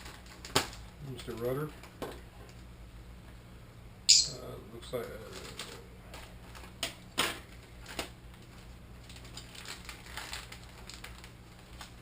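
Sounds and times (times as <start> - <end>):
plastic wrapping crinkling: 9.0 - 12.0.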